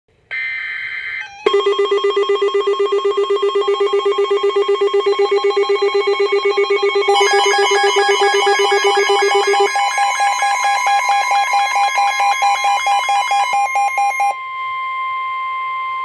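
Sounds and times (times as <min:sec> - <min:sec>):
pulsing low alert tone: 0:01.5 - 0:14.3
higher pulsing tone: 0:03.8 - 0:14.3.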